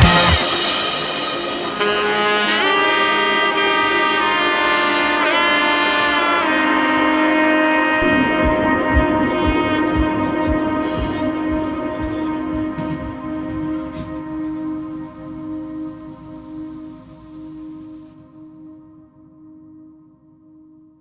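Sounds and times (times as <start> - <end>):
steady beat: 0.0 - 4.4, 8.0 - 17.1
sliding brass melody: 0.0 - 18.2.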